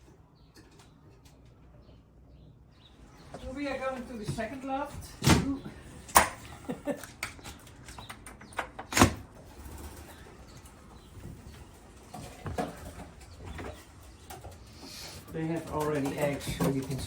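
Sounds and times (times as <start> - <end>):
loft door knocks and clicks: 8.0 - 9.6.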